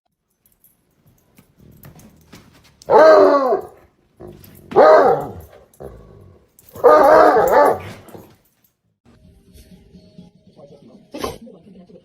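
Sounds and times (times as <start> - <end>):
dog howling: 2.9 - 6.0, 6.8 - 8.3.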